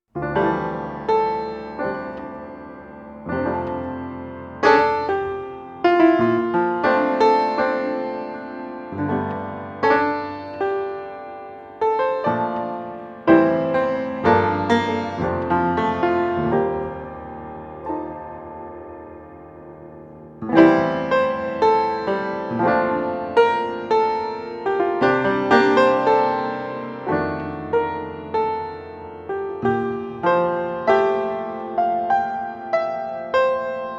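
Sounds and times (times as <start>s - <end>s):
piano music: 0.1s - 33.9s.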